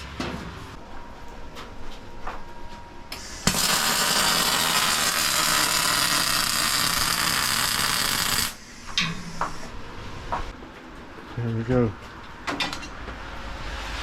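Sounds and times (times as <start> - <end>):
welding arc crackling hiss: 3.1 - 9.7.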